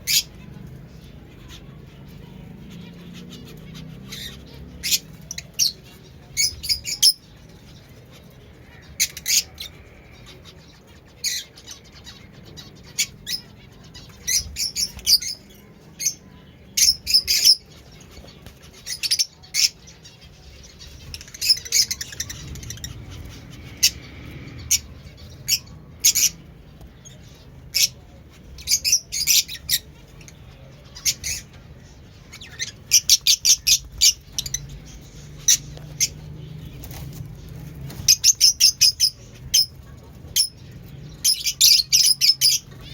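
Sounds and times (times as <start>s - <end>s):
lovebird chirping: 1.5s - 10.5s, 11.2s - 20.0s, 27.0s - 37.2s, 37.9s - 42.9s.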